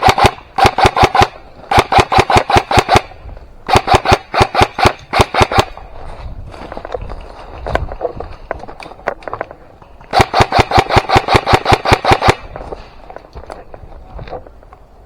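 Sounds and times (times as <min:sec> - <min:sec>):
airsoft gun firing bursts: 0:00.0 - 0:05.9, 0:10.1 - 0:12.8.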